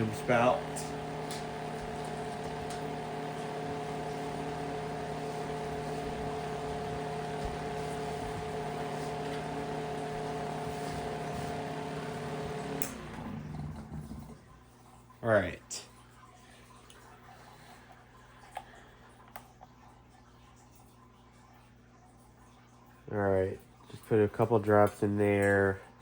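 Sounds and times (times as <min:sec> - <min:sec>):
electric fan humming and whooshing: 0:00.0 - 0:14.6.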